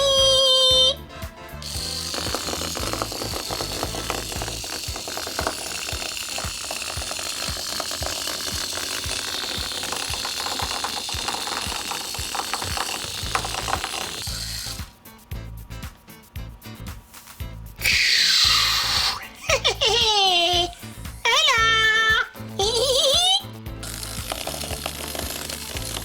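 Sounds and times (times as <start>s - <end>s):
vibrating toys buzzing and rattling: 0.0s - 26.0s
plastic knocking on hard surface: 2.1s - 14.2s.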